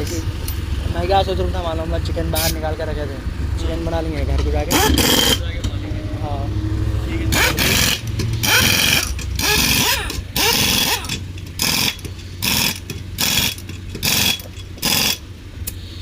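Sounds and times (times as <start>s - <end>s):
pneumatic impact wrench bursts: 4.7s - 5.4s, 7.3s - 16.0s.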